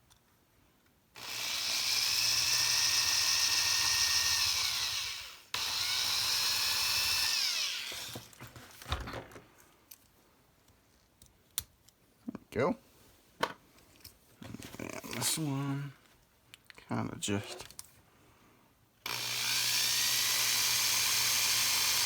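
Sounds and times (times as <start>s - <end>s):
power drill drilling into toy car: 1.2s - 8.4s, 19.0s - 22.0s.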